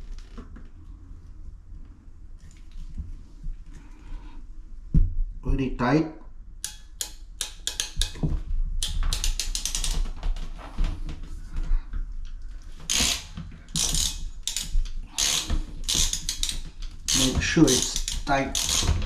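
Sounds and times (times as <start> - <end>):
crimp tool ratchet clicks: 6.6 - 8.2, 8.8 - 10.0, 12.9 - 19.0
crimp tool rasping: 12.9 - 19.0.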